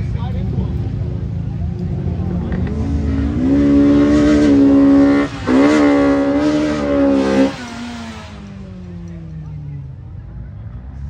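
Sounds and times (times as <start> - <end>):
car engine revving hard: 1.9 - 8.9.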